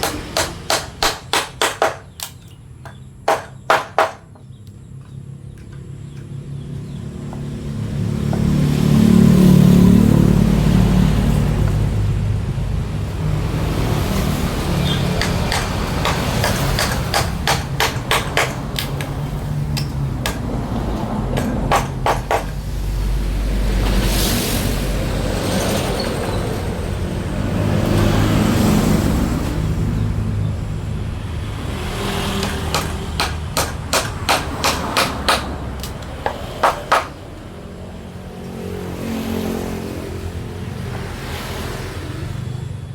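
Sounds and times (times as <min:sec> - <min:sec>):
hammer knocking on wood: 0:00.0 - 0:04.6, 0:14.9 - 0:22.6, 0:32.2 - 0:37.2.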